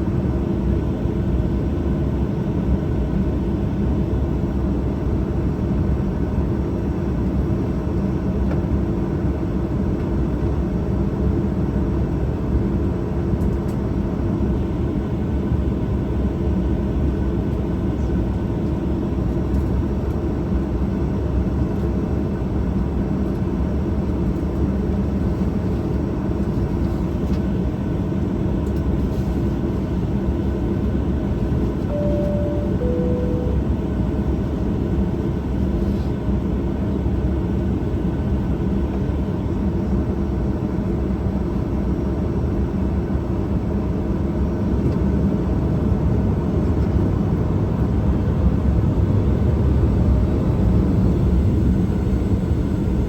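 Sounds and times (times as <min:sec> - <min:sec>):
airplane cabin engine noise: 0:00.0 - 0:53.0
two-tone cabin chime: 0:31.9 - 0:34.0.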